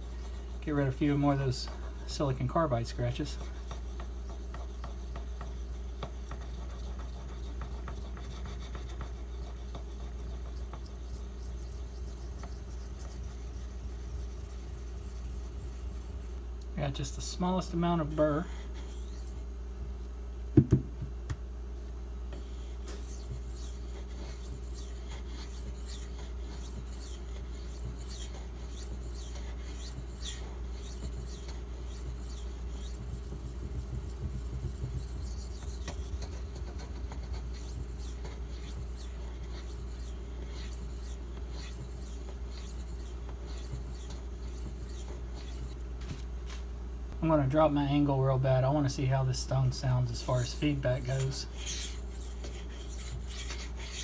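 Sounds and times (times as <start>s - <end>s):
knife scraping on whetstone: 0.0s - 16.4s, 18.0s - 19.5s, 22.4s - 46.3s, 49.9s - 54.0s
sharp knocks: 20.6s - 21.4s.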